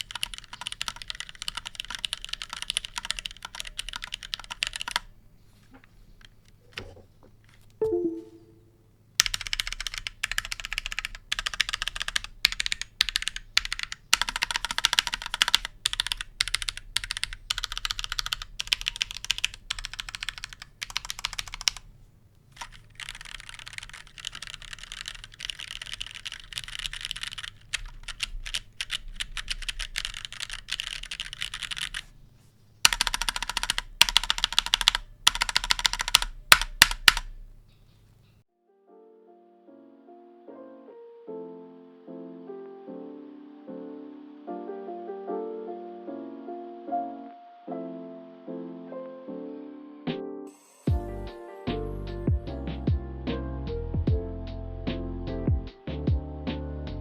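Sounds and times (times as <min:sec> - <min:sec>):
mechanical keyboard typing: 0:00.0 - 0:08.3, 0:09.2 - 0:38.1.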